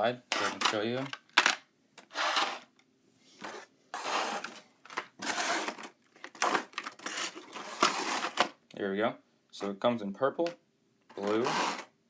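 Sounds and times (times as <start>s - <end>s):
plastic packaging rustling: 3.4s - 8.6s.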